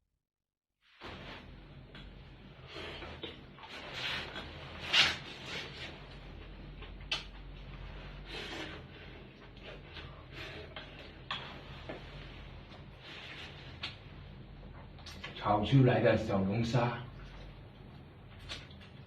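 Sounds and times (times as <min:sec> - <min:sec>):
chewing and mouth noises: 0:14.8 - 0:15.4.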